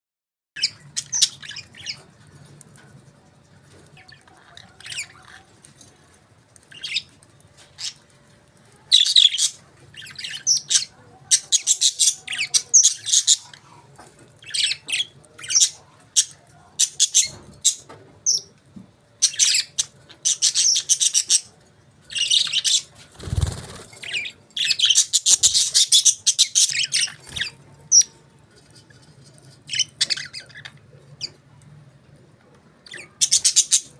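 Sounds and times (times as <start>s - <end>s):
budgerigars chirping: 9.0s - 13.6s, 19.2s - 21.5s, 22.1s - 28.1s, 29.7s - 31.4s, 32.9s - 33.9s.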